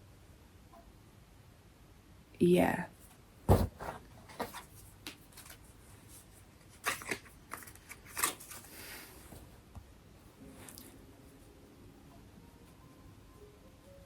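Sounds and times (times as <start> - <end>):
cards rustling and slapping: 3.5 - 5.7, 6.6 - 8.8.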